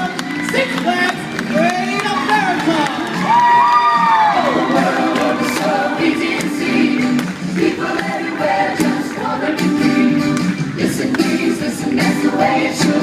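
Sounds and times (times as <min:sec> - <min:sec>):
drums and percussion: 0:00.0 - 0:13.0
several voices singing together: 0:04.2 - 0:13.0.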